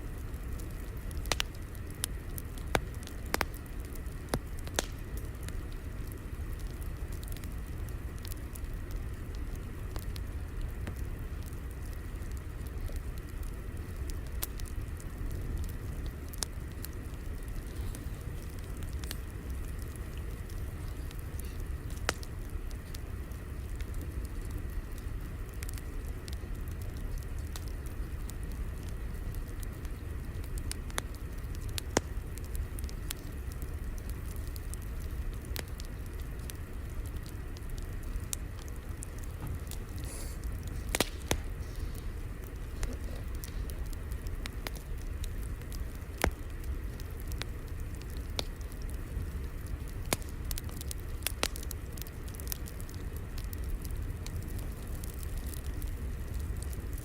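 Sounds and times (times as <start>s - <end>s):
fire crackling: 0.0s - 57.0s
sharp pops and snaps: 0.5s - 7.5s, 25.6s - 57.0s.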